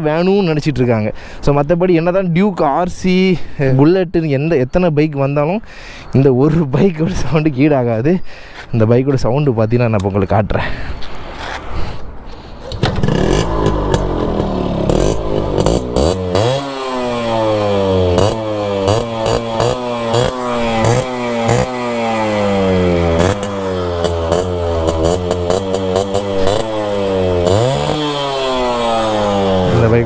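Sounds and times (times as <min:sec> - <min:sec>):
motorcycle engine revving: 0:12.7 - 0:30.0.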